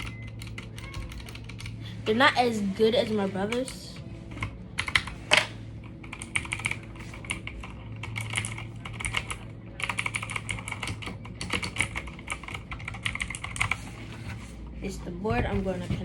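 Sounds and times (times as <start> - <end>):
mechanical keyboard typing: 0.0 - 1.8, 4.8 - 5.2, 6.1 - 13.8.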